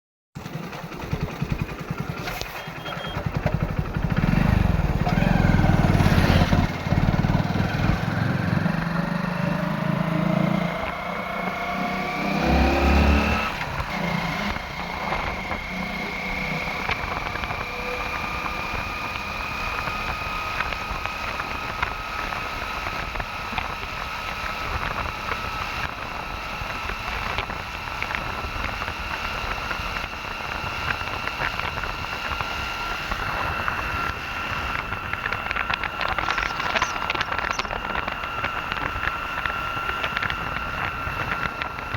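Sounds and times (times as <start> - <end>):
construction machinery engine rumble: 0.4 - 11.4
rising whine: 2.2 - 41.9.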